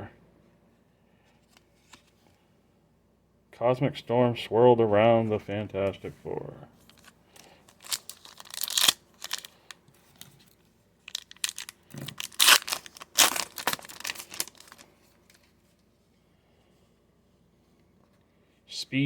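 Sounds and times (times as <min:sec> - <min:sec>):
foil wrapper crinkling and tearing: 0:06.9 - 0:09.8, 0:11.0 - 0:15.0.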